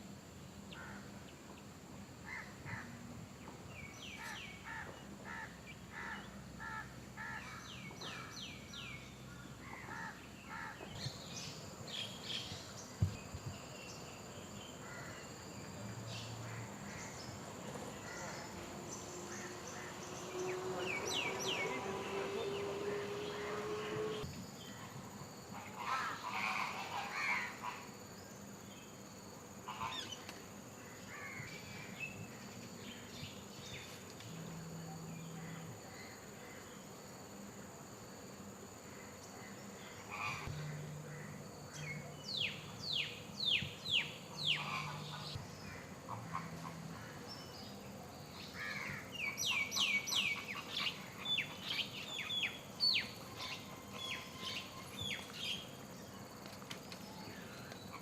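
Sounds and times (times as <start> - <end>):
birds chirping: 3.4 - 24.3, 39.2 - 58.0
steady rising tone: 17.5 - 24.2.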